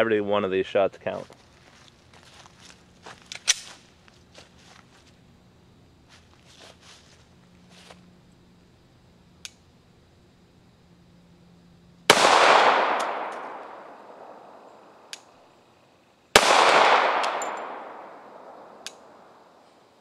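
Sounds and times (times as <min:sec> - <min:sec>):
faint sharp ticks: 0:09.4 - 0:09.6, 0:15.1 - 0:15.3, 0:18.8 - 0:19.1
pistol shots echoing: 0:12.1 - 0:15.1, 0:16.4 - 0:19.4.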